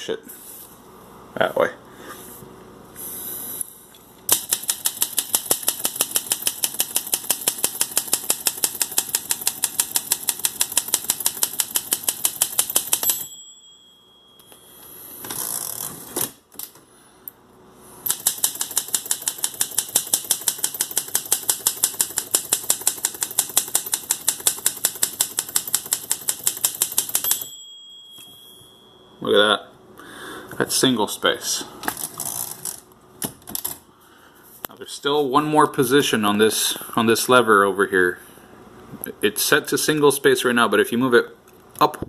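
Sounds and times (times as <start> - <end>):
typewriter keys striking: 4.3 - 13.2, 18.1 - 27.5
typewriter carriage return: 4.3 - 13.3, 18.1 - 27.5
typewriter bell ring: 4.6 - 15.0, 18.1 - 29.2.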